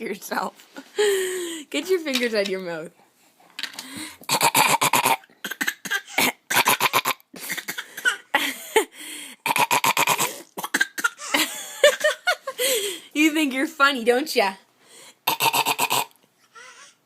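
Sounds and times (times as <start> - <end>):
person coughing: 4.3 - 8.9, 9.5 - 12.4.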